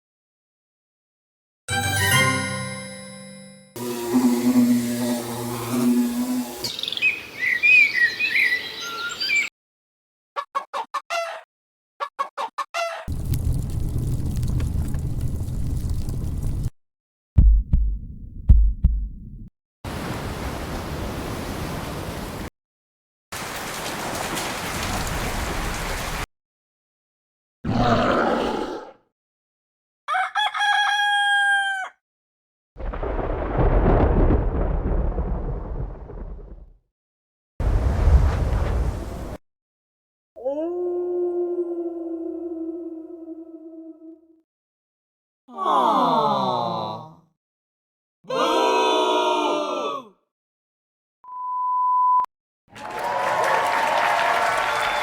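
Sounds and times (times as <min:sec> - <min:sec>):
chime-like tone: 0:01.7 - 0:03.8
birds chirping: 0:06.6 - 0:09.5
low throbbing rumble: 0:13.1 - 0:16.7
rooster crowing: 0:30.1 - 0:32.0, 0:52.8 - 0:55.0.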